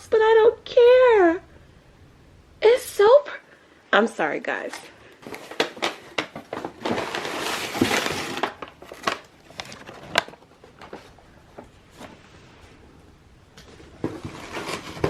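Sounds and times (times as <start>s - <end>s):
packing material rustling: 5.2s - 12.4s, 13.7s - 15.0s.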